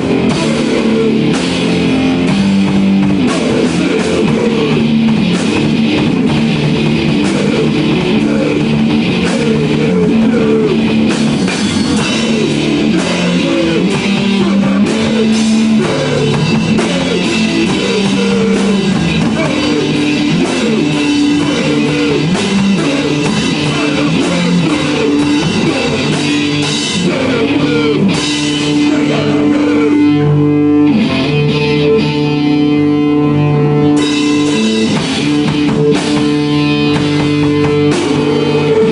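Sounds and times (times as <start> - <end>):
drum kit: 0.0 - 38.9
loud electric guitar: 0.0 - 38.9.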